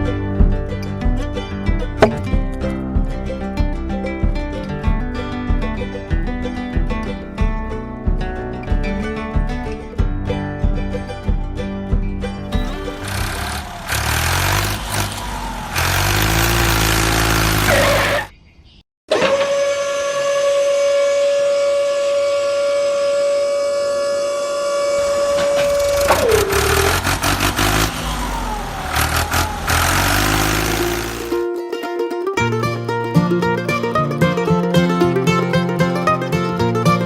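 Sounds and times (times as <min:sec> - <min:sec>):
small engine running: 0:12.5 - 0:18.3, 0:24.9 - 0:31.4.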